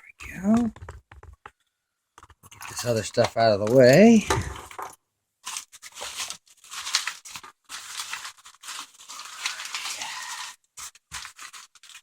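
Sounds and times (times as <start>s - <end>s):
packing material rustling: 5.4s - 12.0s.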